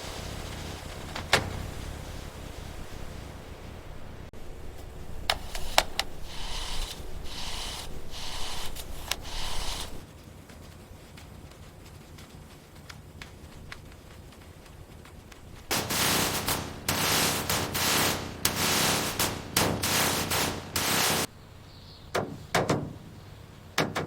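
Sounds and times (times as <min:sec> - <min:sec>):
scraping strokes: 0:04.4 - 0:10.0, 0:15.6 - 0:21.3
sharp clicks: 0:04.7 - 0:10.0
faint light ticks: 0:10.5 - 0:15.6.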